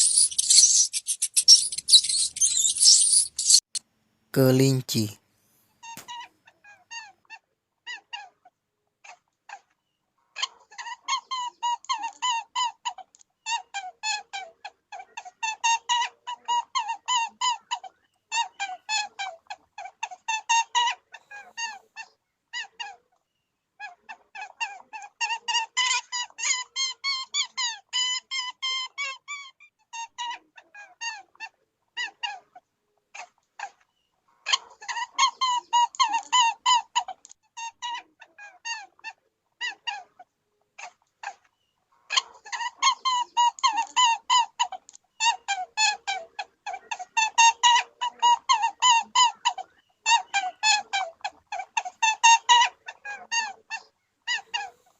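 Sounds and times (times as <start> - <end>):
rabbit squeaking: 0.0 - 3.8, 34.4 - 54.9.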